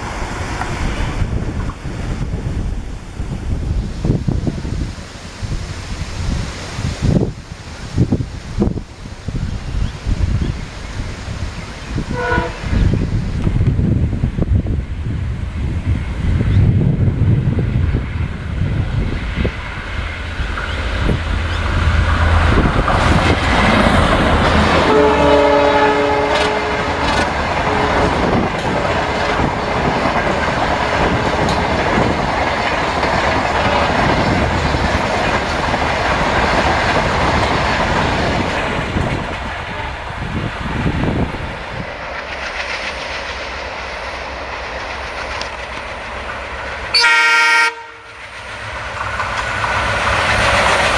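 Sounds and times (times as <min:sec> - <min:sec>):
diesel locomotive engine drone: 0:00.0 - 0:50.9
wheel and rail noise: 0:00.0 - 0:50.9
multi-tone train horn: 0:12.0 - 0:12.9, 0:24.5 - 0:30.0, 0:46.9 - 0:48.2.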